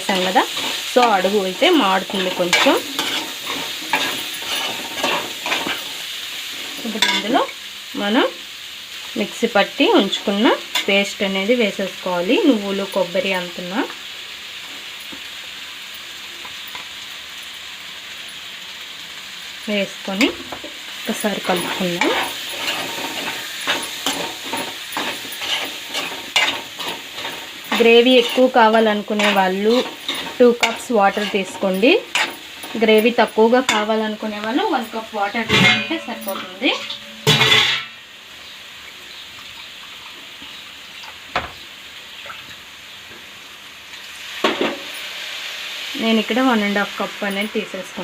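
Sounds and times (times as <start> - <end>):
paste sizzling in a hot pan: 0.0 - 48.0
scraping against pan: 2.1 - 5.9, 21.5 - 32.9.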